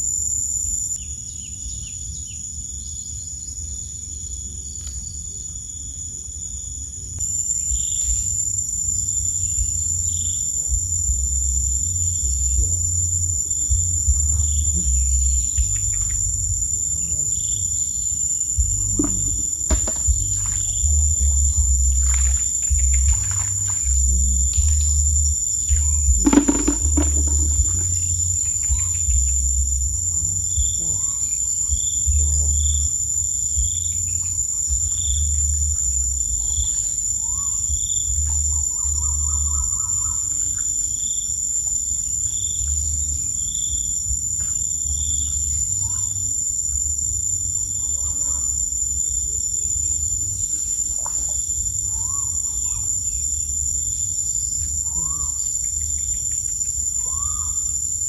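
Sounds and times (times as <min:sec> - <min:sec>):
insect drone with chirps: 0:00.0 - 0:58.0
low rumble: 0:07.2 - 0:39.8
rising calls of birds or frogs: 0:07.2 - 0:58.0.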